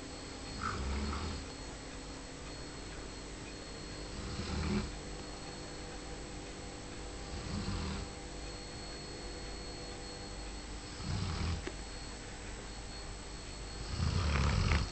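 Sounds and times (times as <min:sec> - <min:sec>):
dog snoring: 0:00.5 - 0:01.6, 0:04.1 - 0:04.9, 0:07.3 - 0:08.2, 0:10.8 - 0:11.7, 0:13.8 - 0:14.9.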